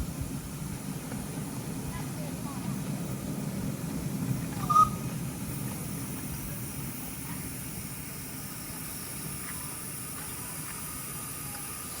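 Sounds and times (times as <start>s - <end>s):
steam locomotive hissing: 0.0s - 12.0s
sharp high whistle peep: 4.6s - 5.0s.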